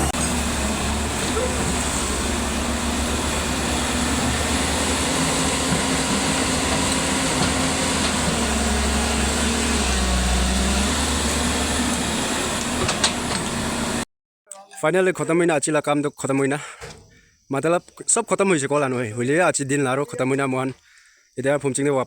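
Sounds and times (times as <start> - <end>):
heavy machinery diesel engine running: 0.0 - 14.0.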